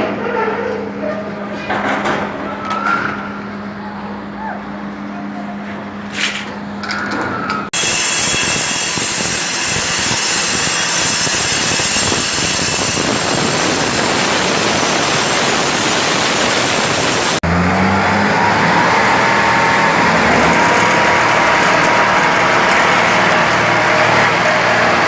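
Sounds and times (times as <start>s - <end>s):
loud hissing machine noise: 7.8s - 17.4s, 19.8s - 25.0s
engine running steadily: 9.0s - 25.0s.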